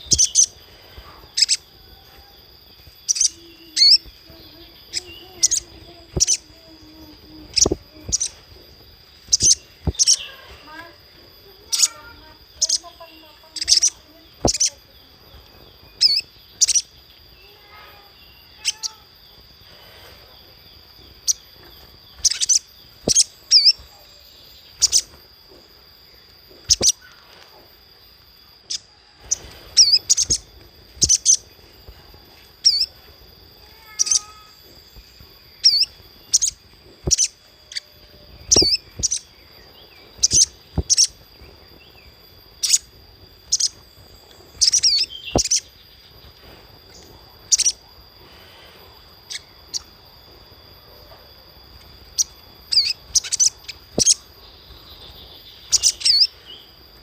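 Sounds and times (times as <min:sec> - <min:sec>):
bird high chipping calls: 0:00.0 - 0:19.6, 0:20.5 - 0:25.2, 0:26.2 - 0:27.3, 0:28.5 - 0:48.0, 0:49.0 - 0:50.0, 0:50.8 - 0:57.0
faint high whine: 0:00.0 - 0:57.0.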